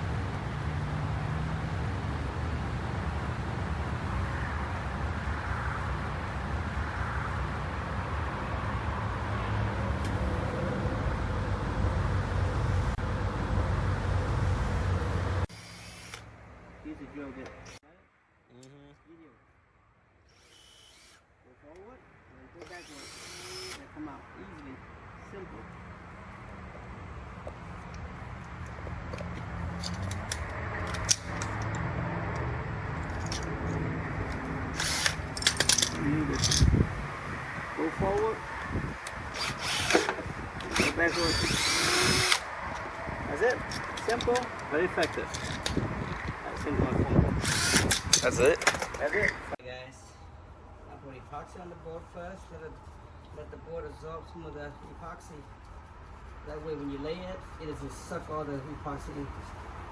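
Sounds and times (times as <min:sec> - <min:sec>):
power drill running: 0:15.5 - 0:16.2, 0:20.3 - 0:21.2, 0:22.7 - 0:23.8, 0:34.8 - 0:35.2, 0:39.4 - 0:42.4, 0:47.4 - 0:48.0.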